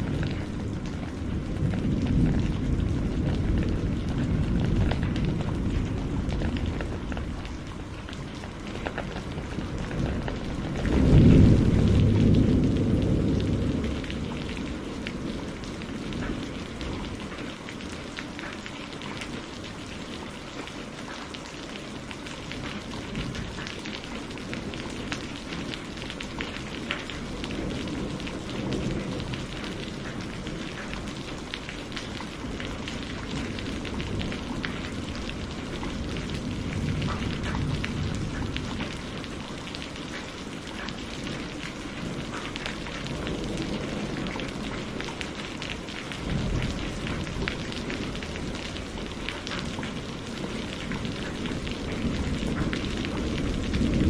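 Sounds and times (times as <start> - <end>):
low thunder rumble: 0.0 - 17.6, 22.6 - 54.0
rain drops hitting a surface: 0.0 - 54.0.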